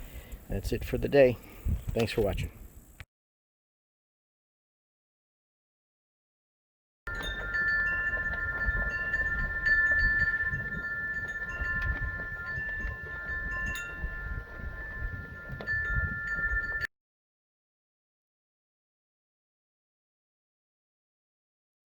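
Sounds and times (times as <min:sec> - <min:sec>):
wind rumble on microphone: 0:00.6 - 0:02.8, 0:07.1 - 0:16.9
wind chimes ringing: 0:07.1 - 0:16.9.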